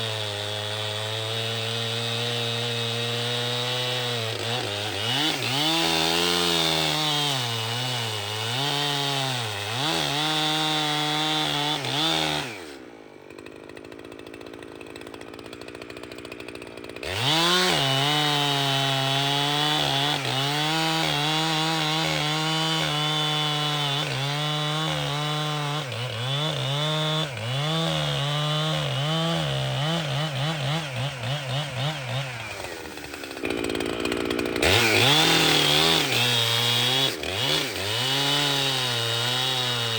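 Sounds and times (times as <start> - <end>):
chainsaw cutting wood: 0.0 - 39.9.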